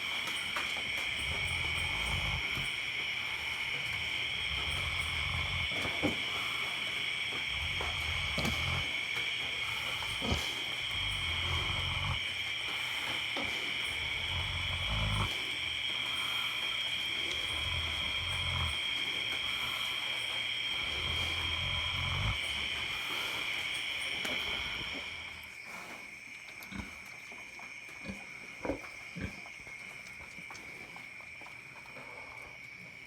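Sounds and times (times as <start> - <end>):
pigs snoring: 0.0 - 27.2, 27.9 - 33.0
night insects chirring: 0.0 - 33.0.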